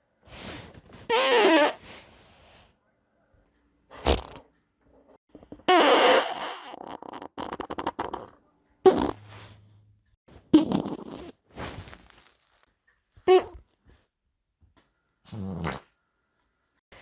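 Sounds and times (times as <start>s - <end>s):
farts: 1.1s - 1.8s, 4.0s - 4.4s, 5.6s - 8.3s, 8.9s - 9.6s, 10.4s - 12.2s, 13.3s - 13.6s, 15.3s - 15.9s.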